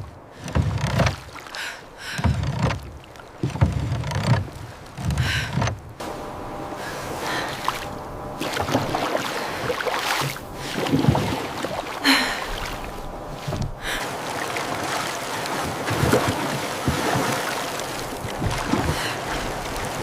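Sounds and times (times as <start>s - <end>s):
rushing water: 0.0s - 20.0s
wind: 0.0s - 20.0s
sudden splashes or knocks: 7.5s - 20.0s.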